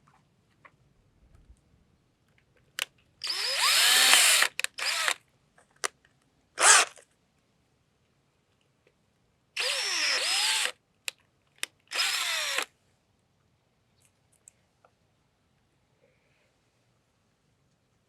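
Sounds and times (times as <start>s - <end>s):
power drill whining in bursts: 3.2s - 5.2s, 6.6s - 6.9s, 9.6s - 10.7s, 11.9s - 12.7s.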